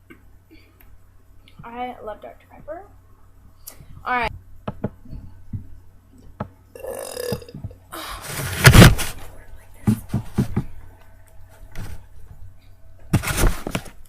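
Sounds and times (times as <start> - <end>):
girl burping loudly: 6.7 - 8.2.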